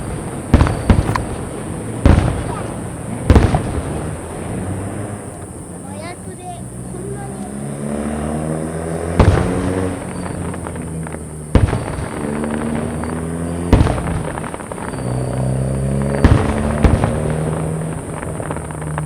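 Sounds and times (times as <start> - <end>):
fireworks shells bursting: 0.0 - 5.6, 9.0 - 19.0.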